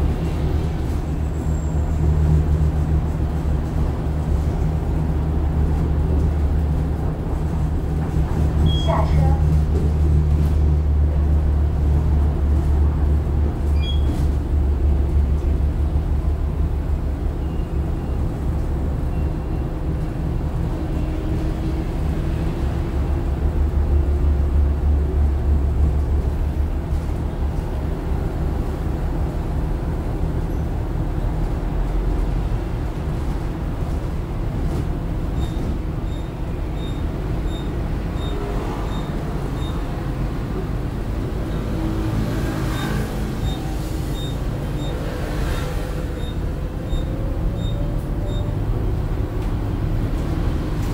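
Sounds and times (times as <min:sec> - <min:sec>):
electric bus rumbling: 0:00.0 - 0:50.9.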